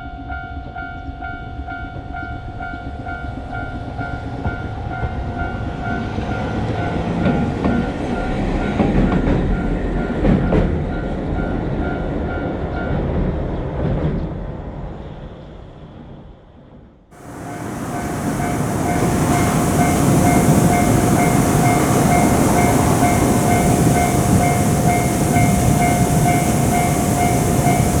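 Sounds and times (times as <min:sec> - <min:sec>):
railroad crossing bell clanging: 0:17.2 - 0:28.0
train passing: 0:17.2 - 0:28.0
wheels clacking over rail joints: 0:17.2 - 0:28.0.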